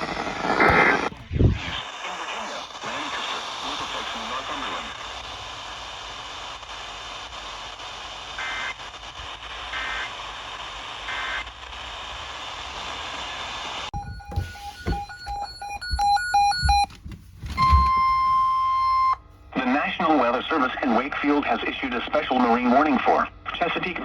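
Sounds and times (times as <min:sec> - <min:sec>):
radio static hiss: 0:00.0 - 0:15.5
rapid electronic beeps: 0:13.9 - 0:19.2
two-tone data bursts: 0:13.9 - 0:19.2
warning alarm tone: 0:13.9 - 0:19.2.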